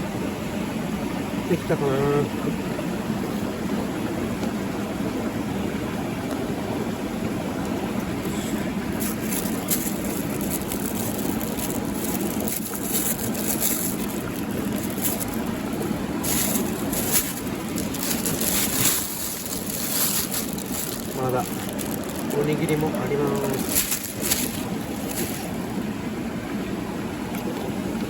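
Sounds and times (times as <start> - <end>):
mountain stream rushing: 2.8 - 28.0
light rustling or crackling: 8.9 - 25.7.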